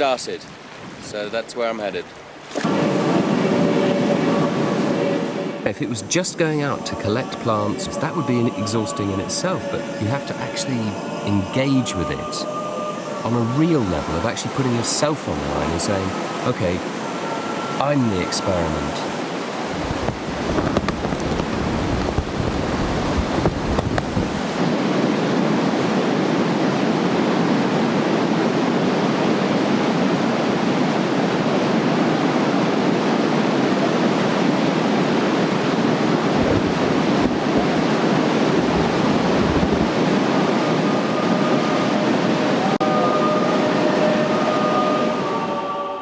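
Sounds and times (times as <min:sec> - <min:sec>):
rushing river water: 0:00.0 - 0:46.0
wind buffeting microphone: 0:19.1 - 0:42.5.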